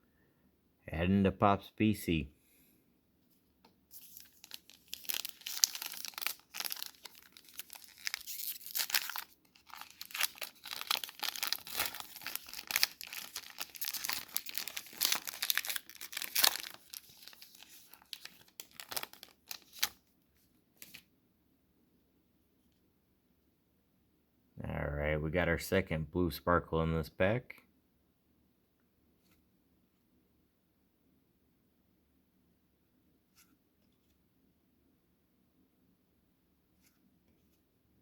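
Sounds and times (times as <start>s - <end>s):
foil wrapper tearing and crinkling: 3.9s - 20.0s.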